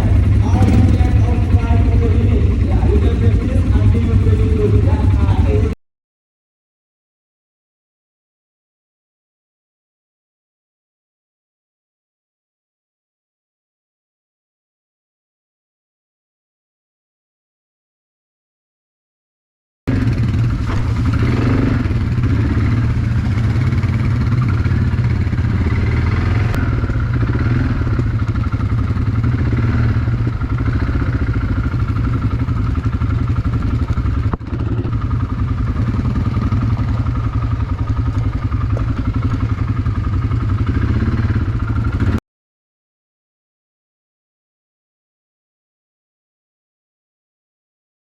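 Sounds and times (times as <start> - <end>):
vehicle low rumble: 0.0 - 5.8, 19.9 - 42.2.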